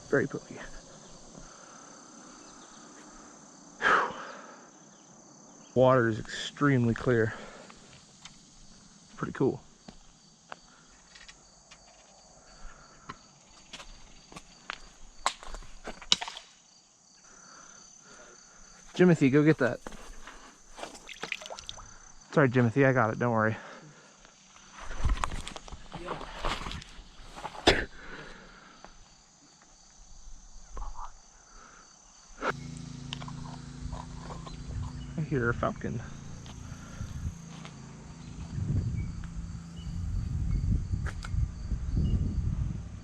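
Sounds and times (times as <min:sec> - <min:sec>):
crickets chirring: 0:00.0 - 0:43.0
insects trilling: 0:00.0 - 0:43.0
low steady hum: 0:32.4 - 0:43.0.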